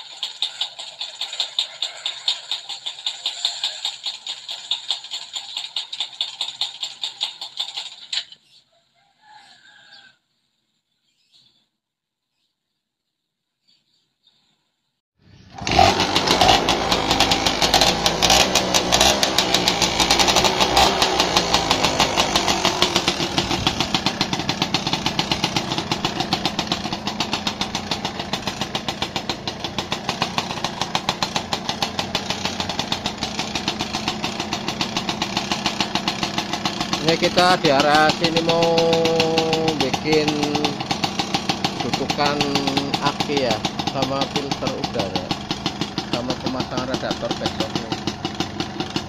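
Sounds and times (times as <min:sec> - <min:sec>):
motorcycle engine ticking knock: 0:16.4 - 0:49.0.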